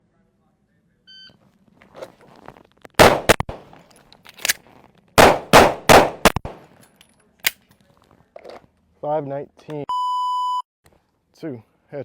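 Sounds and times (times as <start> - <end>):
gunshots: 3.0 - 3.7, 5.2 - 6.6.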